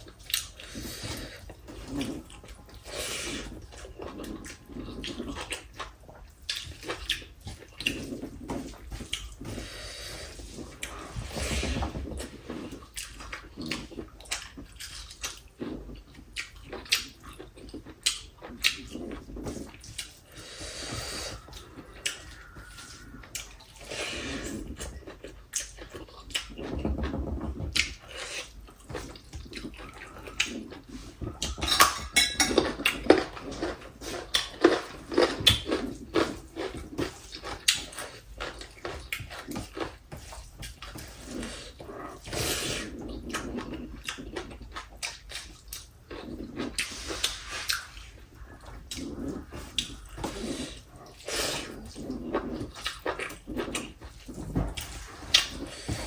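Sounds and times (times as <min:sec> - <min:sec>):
wet chewing: 0:00.0 - 0:56.0
slurping: 0:00.1 - 0:56.0.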